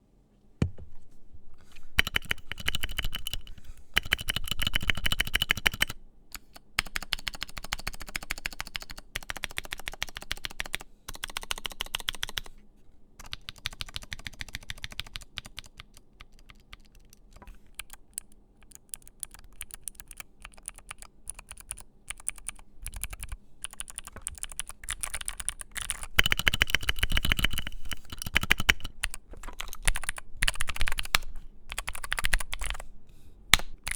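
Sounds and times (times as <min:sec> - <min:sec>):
mechanical keyboard typing clicks: 0:02.0 - 0:12.5, 0:13.2 - 0:32.9, 0:33.5 - 0:33.9.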